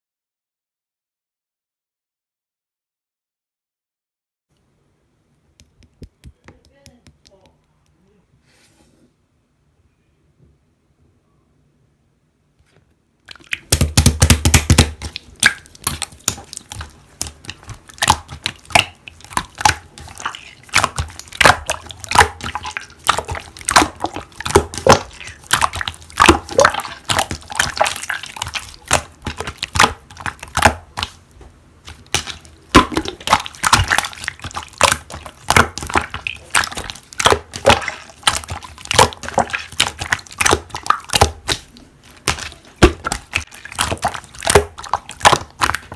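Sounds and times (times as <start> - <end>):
slime squished by hand: 13.2 - 45.9.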